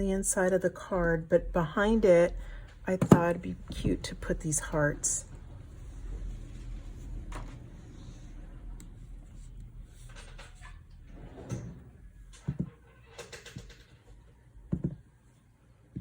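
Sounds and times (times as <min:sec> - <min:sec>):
soft knocks on a tabletop: 0:14.7 - 0:15.0.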